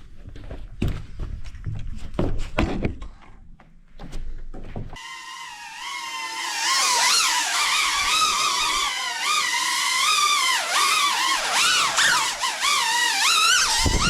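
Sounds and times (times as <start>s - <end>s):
drone motors whining: 5.0s - 14.0s.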